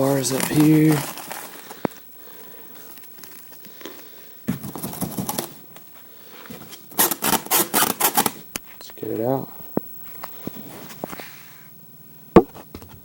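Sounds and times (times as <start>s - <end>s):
packaging rustling and crinkling: 0.0s - 8.4s.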